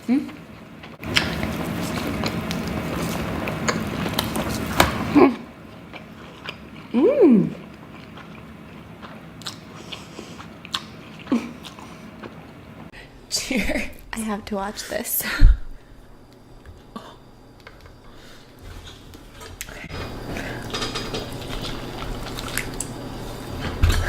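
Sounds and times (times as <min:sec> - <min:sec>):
chewing and biting food: 0:00.3 - 0:12.6, 0:20.6 - 0:23.5
person humming mmm: 0:06.8 - 0:07.7.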